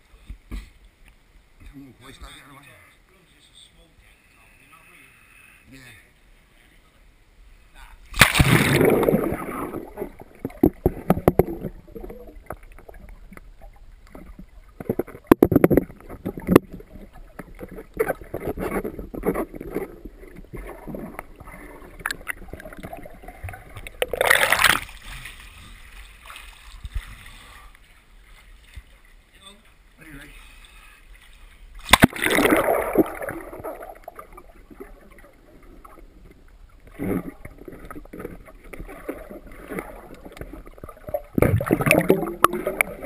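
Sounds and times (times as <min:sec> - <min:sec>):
water sloshing and gurgling: 0:08.1 - 0:43.0
water splashing: 0:08.1 - 0:43.0.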